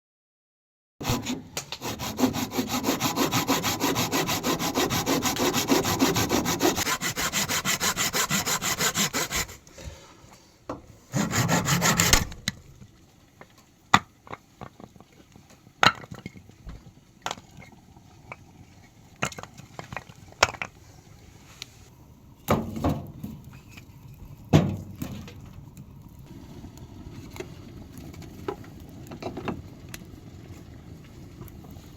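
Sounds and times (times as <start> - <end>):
hand saw cutting wood: 1.0 - 9.7, 11.1 - 12.4.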